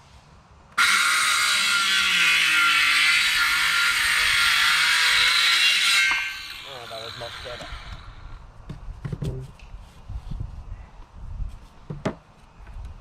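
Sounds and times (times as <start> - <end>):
cordless power tool cutting wood: 0.8 - 8.4.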